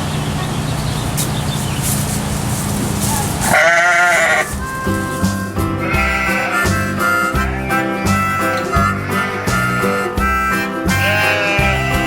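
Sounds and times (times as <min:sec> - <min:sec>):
rushing background noise: 0:00.0 - 0:10.4
harmonica music: 0:02.0 - 0:12.0
sheep bleating: 0:03.0 - 0:12.0.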